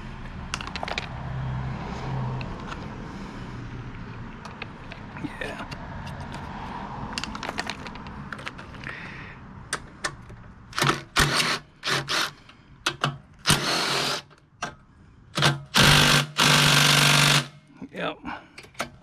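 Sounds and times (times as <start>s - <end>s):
power driver spinning bolts: 10.7s - 14.4s, 15.4s - 17.5s.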